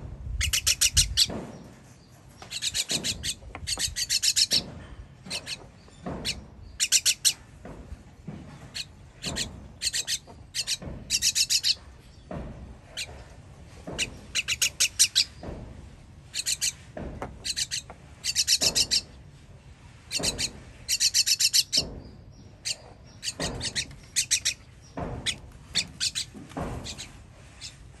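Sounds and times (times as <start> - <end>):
baby bird chirping: 0.4 - 1.4, 2.4 - 4.7, 5.3 - 7.4, 8.7 - 11.8, 14.0 - 15.5, 16.3 - 16.8, 17.4 - 19.1, 20.1 - 27.8.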